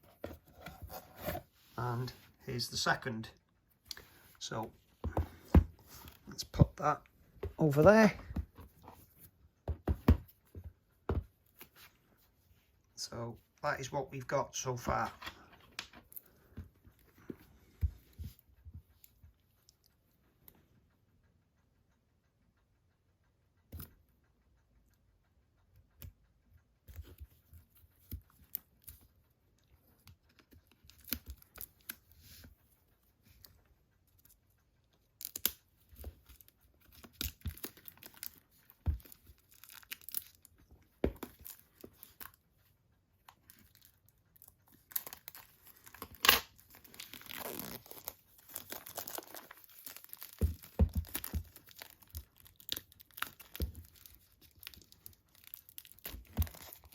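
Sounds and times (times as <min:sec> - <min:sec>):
handling knocks and clicks: 0:04.7 - 0:12.0, 0:44.9 - 0:56.9
plastic wrapping tearing: 0:44.9 - 0:56.9.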